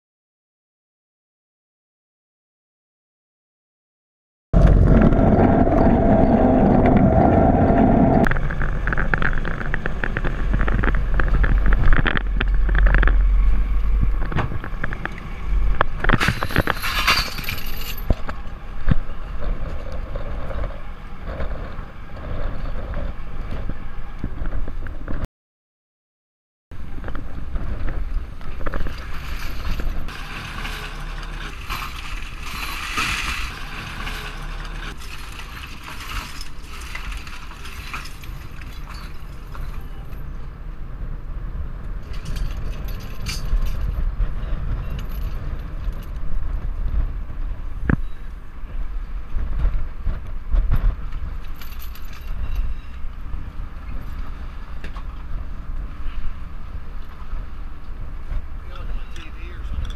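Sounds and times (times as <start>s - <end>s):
wind on microphone: 4.6s - 16.8s, 18.0s - 25.2s, 35.6s - 59.9s
boat motor rumbling: 4.6s - 25.2s, 26.8s - 59.9s
rattling and clattering: 15.7s - 18.3s, 27.6s - 40.2s, 42.0s - 46.2s.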